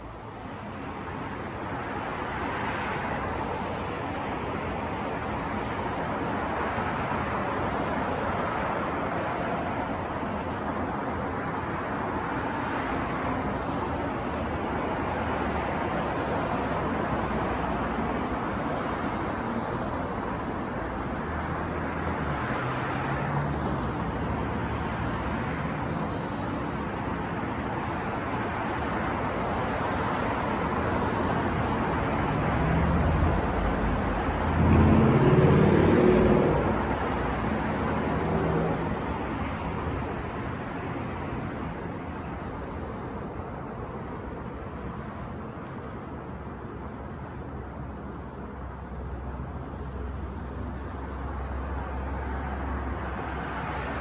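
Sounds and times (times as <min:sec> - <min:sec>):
passing cars: 0:00.0 - 0:54.0
vehicle passing with low engine hum: 0:30.9 - 0:54.0.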